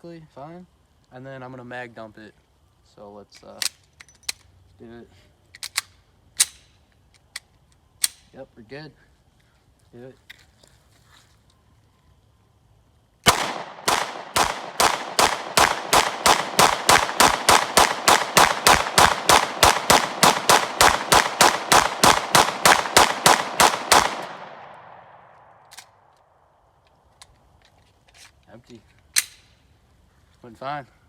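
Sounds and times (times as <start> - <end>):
pistol shots: 13.2 - 26.0
gunshot echo: 13.3 - 25.6.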